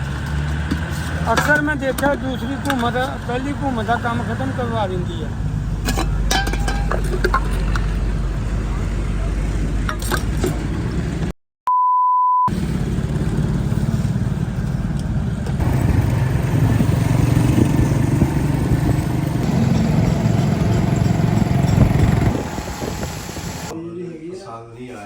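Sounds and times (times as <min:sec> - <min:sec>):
traffic rumble: 0:00.0 - 0:11.3, 0:12.5 - 0:23.8
vehicle engine: 0:00.0 - 0:11.3, 0:12.5 - 0:23.8
censor beep tone: 0:11.7 - 0:12.5.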